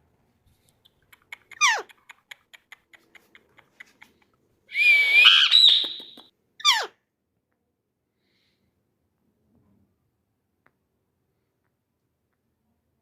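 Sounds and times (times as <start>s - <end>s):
parrot falling whistle: 4.7s - 6.8s
parrot harsh call: 4.7s - 7.0s.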